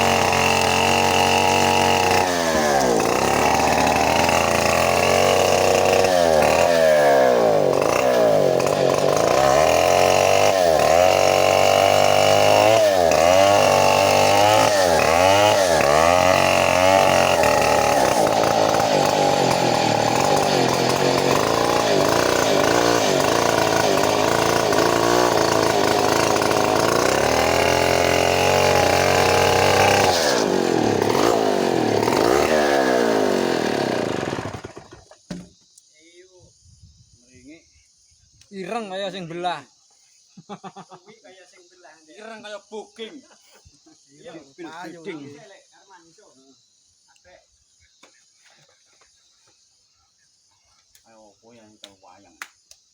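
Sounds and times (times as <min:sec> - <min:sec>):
chainsaw cutting log: 0:00.0 - 0:35.6.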